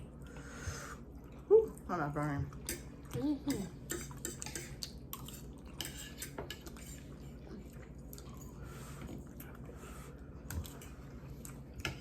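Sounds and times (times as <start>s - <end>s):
chewing: 4.0s - 12.0s.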